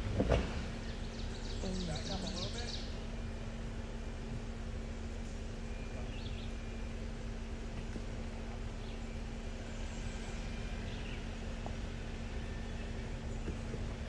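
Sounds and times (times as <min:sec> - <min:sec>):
low rumble: 0:00.0 - 0:01.6.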